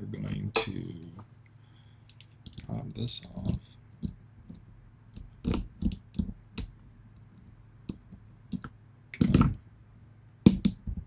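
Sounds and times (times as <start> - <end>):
small metal clicks and taps: 2.1 - 2.7.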